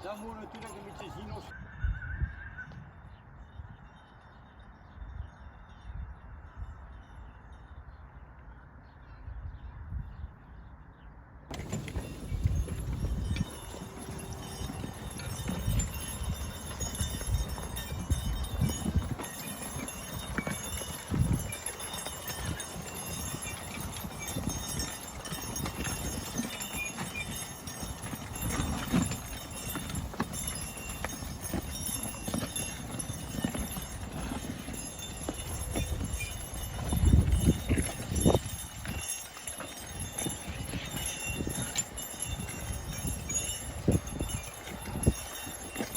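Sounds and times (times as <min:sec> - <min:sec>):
horse hoofbeats on a field: 0:00.0 - 0:01.6, 0:11.5 - 0:45.9.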